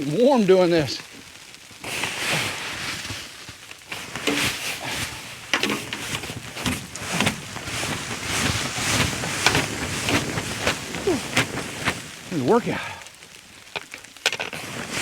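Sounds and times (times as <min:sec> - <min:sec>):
broom sweeping snow off roof: 0:01.8 - 0:12.5.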